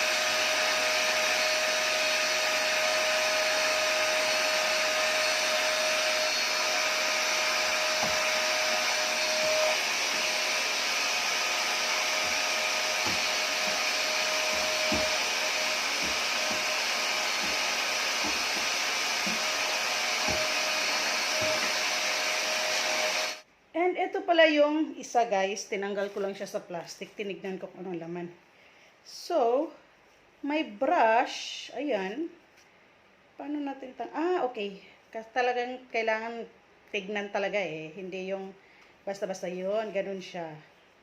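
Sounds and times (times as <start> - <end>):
vacuum cleaner running: 0.0 - 23.5.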